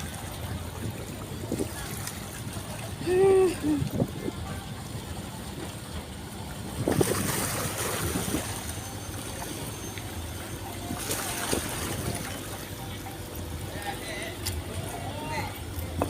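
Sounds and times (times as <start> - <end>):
wind on microphone: 6.6 - 8.6.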